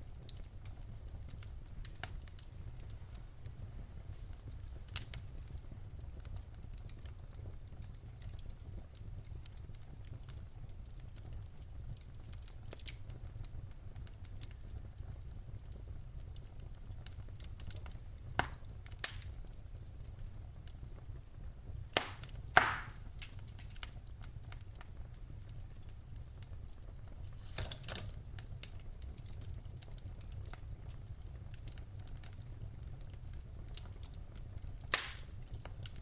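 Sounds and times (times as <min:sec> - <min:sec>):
low fire rumble: 0:00.0 - 0:36.0
wood fire crackling: 0:00.0 - 0:36.0
sharp pops of burning logs: 0:17.0 - 0:20.0, 0:21.8 - 0:26.0, 0:27.0 - 0:36.0.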